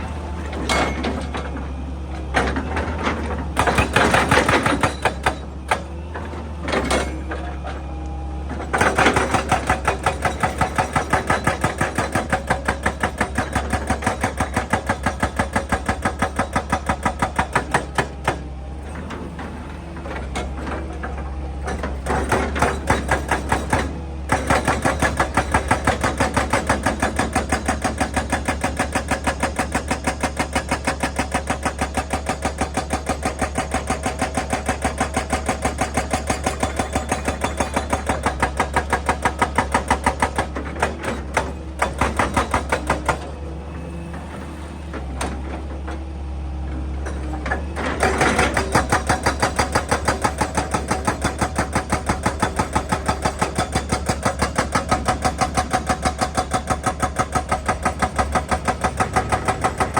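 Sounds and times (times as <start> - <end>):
excavator engine running: 0.0 - 59.9
hydraulic breaker hammering: 2.3 - 6.0, 8.6 - 18.6, 19.6 - 43.3, 47.8 - 59.9.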